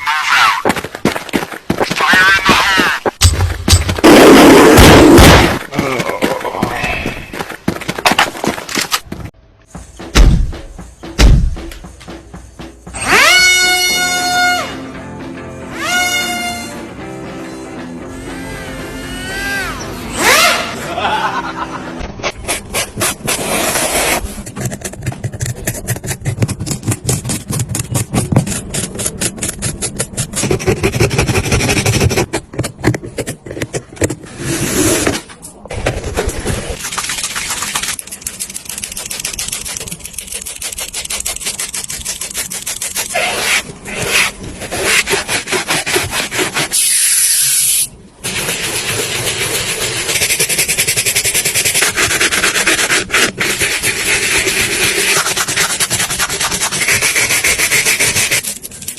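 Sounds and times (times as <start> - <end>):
rapid rubbing and scraping strokes: 22.4 - 32.3, 36.3 - 58.9.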